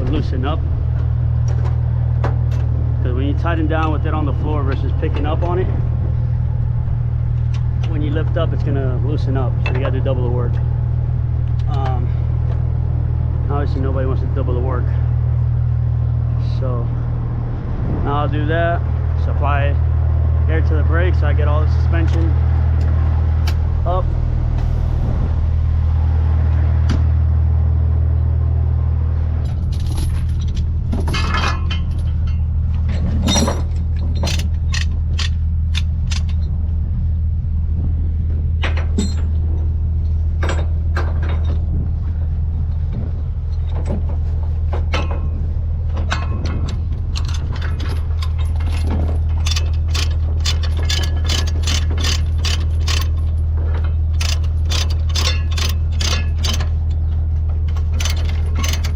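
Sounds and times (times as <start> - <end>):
diesel truck engine idling: 0.0 - 29.7
metallic clinks and clanks: 29.4 - 36.5, 38.6 - 39.4, 46.0 - 58.9
ratchet strap clicking: 49.4 - 53.3, 54.2 - 56.8, 57.9 - 58.9.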